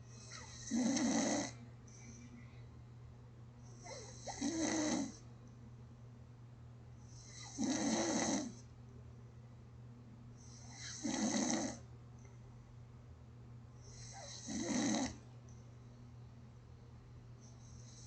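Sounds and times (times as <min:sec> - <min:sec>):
steady low hum: 0:00.0 - 0:18.0
gentle snoring: 0:00.1 - 0:02.1, 0:03.8 - 0:05.2, 0:07.1 - 0:08.6, 0:10.4 - 0:11.8, 0:13.9 - 0:15.2.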